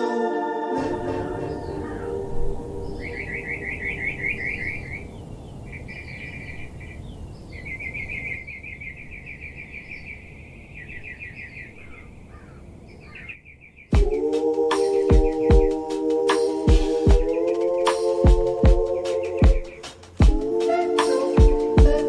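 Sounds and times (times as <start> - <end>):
low background rumble: 0.8 - 13.3
high short bird chirps: 0.8 - 13.9
bird chirping trills: 0.8 - 14.2.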